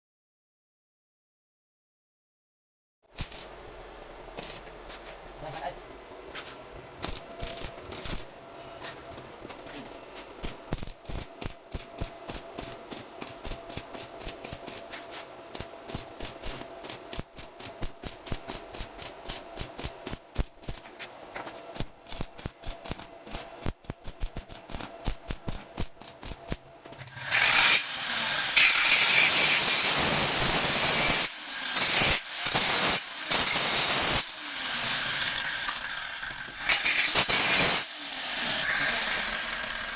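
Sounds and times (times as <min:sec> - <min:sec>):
loud steady hissing: 0:27.2 - 0:39.9.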